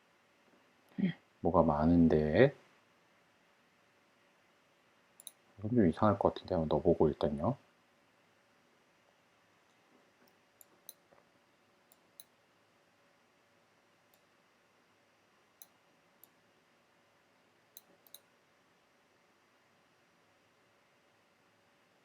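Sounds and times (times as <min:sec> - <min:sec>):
computer mouse clicks: 0:05.2 - 0:05.4, 0:17.8 - 0:18.3.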